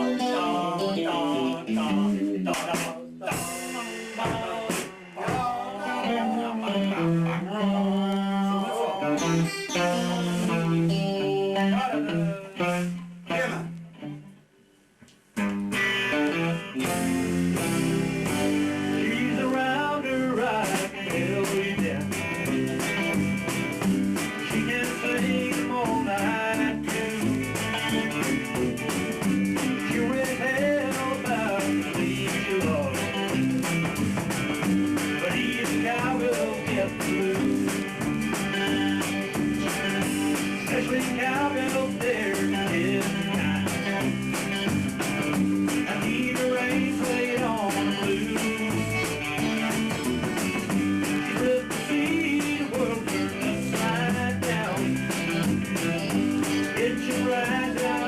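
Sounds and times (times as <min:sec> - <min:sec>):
drums keeping the beat: 0:00.0 - 0:07.7, 0:09.1 - 0:13.9, 0:15.4 - 0:58.0
electric guitar playing: 0:00.0 - 0:14.7, 0:15.4 - 0:58.0.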